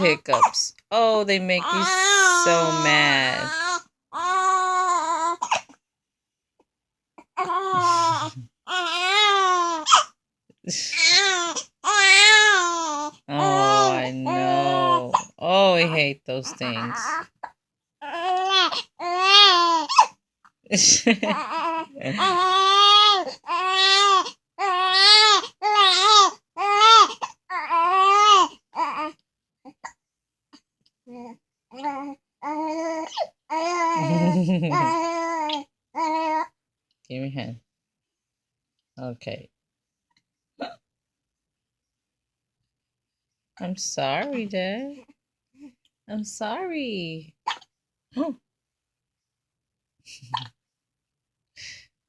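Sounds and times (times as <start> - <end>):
baby crying: 1.6 - 5.6, 7.3 - 10.1, 10.9 - 16.0, 16.6 - 17.3, 18.0 - 20.1, 21.2 - 29.2, 31.1 - 36.5
baby hiccups: 5.2 - 5.8, 13.8 - 15.4, 47.4 - 47.7, 50.3 - 50.5.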